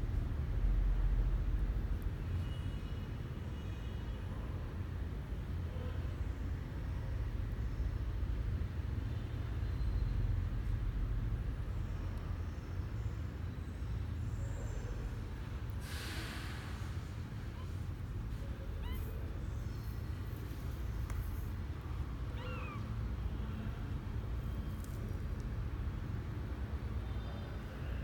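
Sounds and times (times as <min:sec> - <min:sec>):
kitten mewing: 0:18.4 - 0:20.0, 0:22.0 - 0:23.1.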